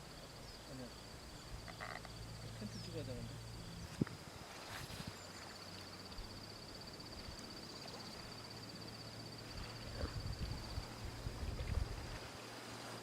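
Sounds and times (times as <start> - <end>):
insect trilling: 0.2 - 4.3
low bumps and rumble: 9.5 - 12.3.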